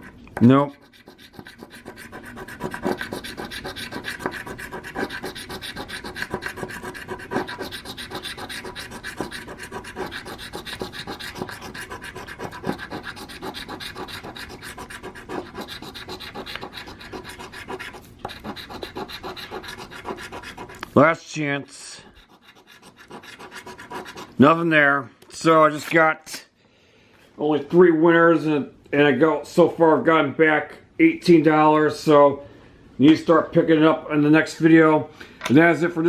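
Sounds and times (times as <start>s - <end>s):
scratching lottery ticket coating: 0.0s - 20.9s, 22.2s - 24.4s.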